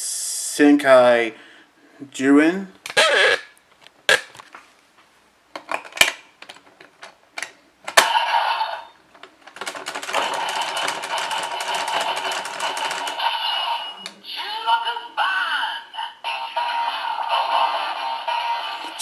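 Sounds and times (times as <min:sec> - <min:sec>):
plastic clicks: 0:05.5 - 0:08.2, 0:09.1 - 0:13.2.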